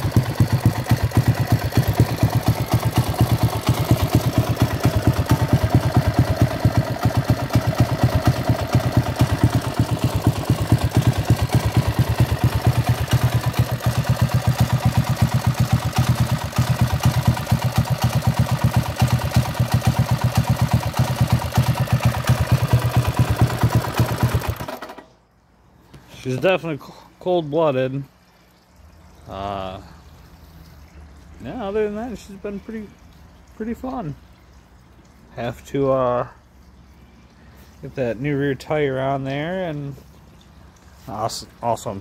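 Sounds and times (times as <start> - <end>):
small engine idling: 0.0 - 25.2.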